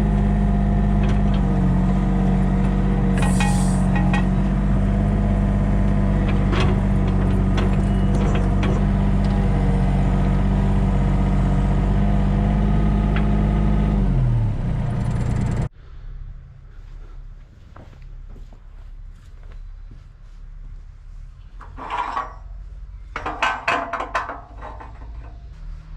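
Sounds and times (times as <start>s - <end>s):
bandsaw mill humming: 0.1s - 15.7s.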